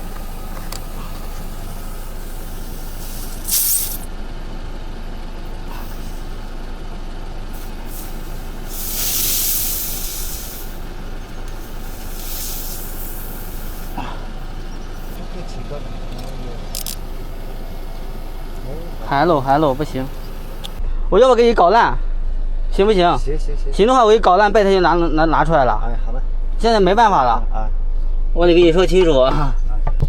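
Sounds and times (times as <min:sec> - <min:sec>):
air hissing from tyre: 0:00.0 - 0:16.0, 0:16.6 - 0:20.8
steady low rumble: 0:00.0 - 0:29.9.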